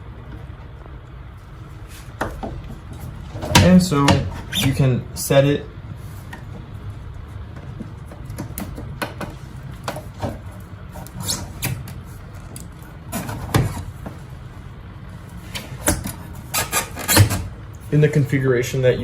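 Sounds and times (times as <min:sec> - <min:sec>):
steady low hum: 0:00.0 - 0:19.0
metal clunks and scrapes: 0:01.8 - 0:04.9, 0:07.5 - 0:14.3, 0:15.3 - 0:17.6.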